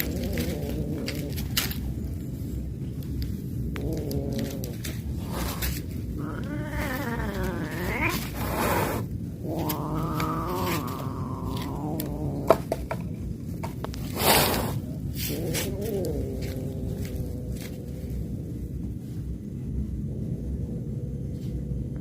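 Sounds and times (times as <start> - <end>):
cats yowling: 3.6 - 12.7, 15.2 - 18.2.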